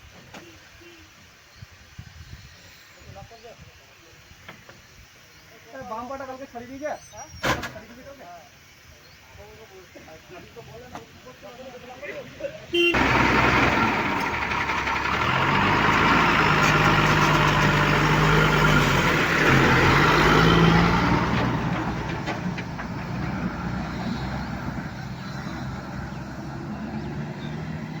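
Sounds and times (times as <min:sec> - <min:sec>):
heavy vehicle engine running: 0:12.8 - 0:28.0.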